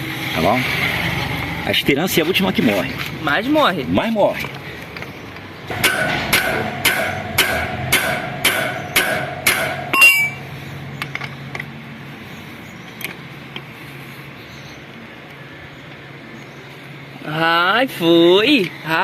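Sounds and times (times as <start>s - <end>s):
hammer tapping metal bit: 5.7s - 10.4s.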